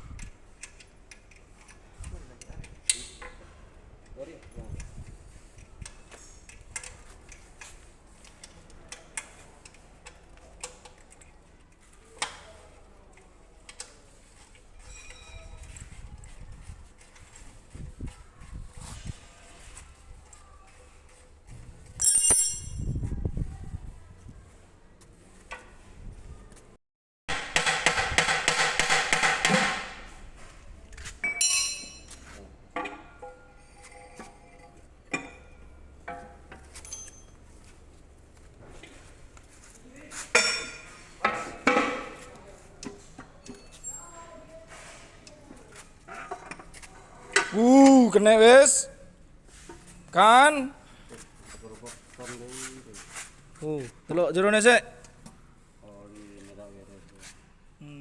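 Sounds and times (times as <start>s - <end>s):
metallic clicks and knocks of tools: 22.0s - 22.9s
ringing metal clang: 22.0s - 23.0s, 31.2s - 32.1s.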